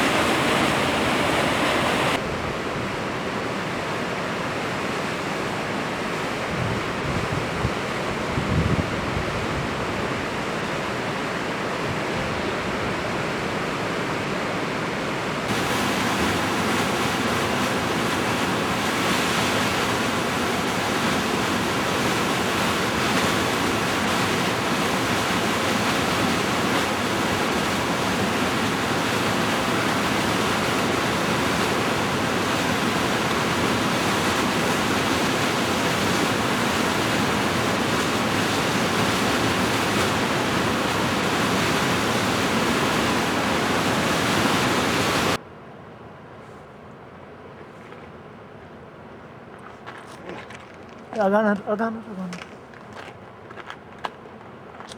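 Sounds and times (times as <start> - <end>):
waterfall rushing: 0.0 - 2.2, 15.5 - 45.4
wind buffeting microphone: 6.5 - 10.3.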